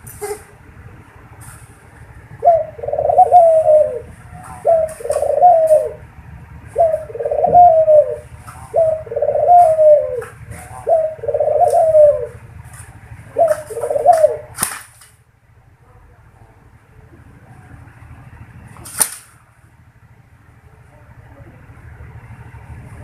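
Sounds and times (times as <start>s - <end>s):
dove cooing: 0.0s - 1.0s, 1.8s - 14.8s.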